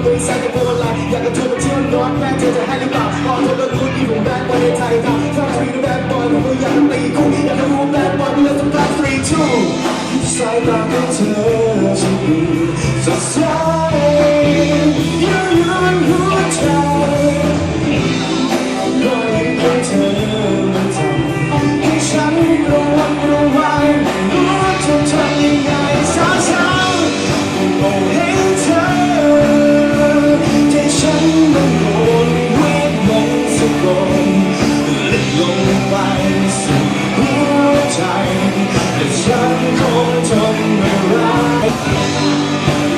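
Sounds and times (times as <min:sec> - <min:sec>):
rock song with singing: 0:00.0 - 0:42.9.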